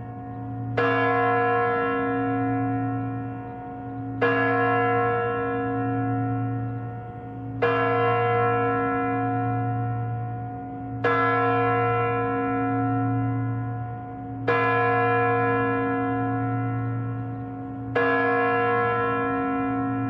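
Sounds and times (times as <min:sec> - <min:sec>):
large bell striking: 0:00.0 - 0:20.0.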